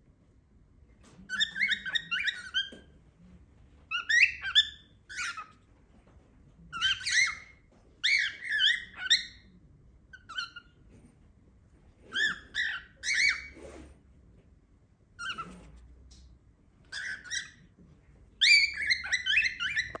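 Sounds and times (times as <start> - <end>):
cockatiel chirping: 1.3 - 2.9, 3.9 - 5.6, 6.7 - 10.8, 12.0 - 13.7, 15.2 - 15.8, 16.9 - 17.7, 18.4 - 20.0.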